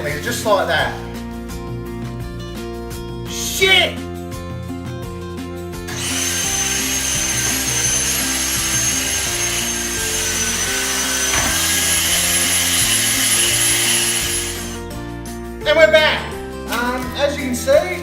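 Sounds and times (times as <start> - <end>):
background music: 0.0 - 18.0
power tool motor whining: 5.9 - 14.9.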